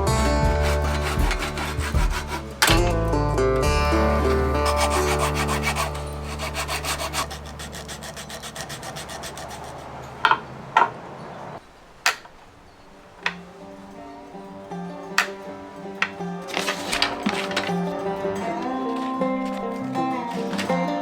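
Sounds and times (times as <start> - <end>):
tool rasping over wood: 0.0 - 3.0, 4.2 - 10.5, 16.0 - 21.0
sharp knocks: 0.4 - 3.2.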